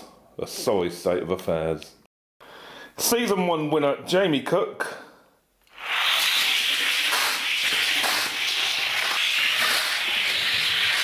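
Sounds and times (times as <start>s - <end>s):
toy car rolling on track: 7.0s - 11.0s.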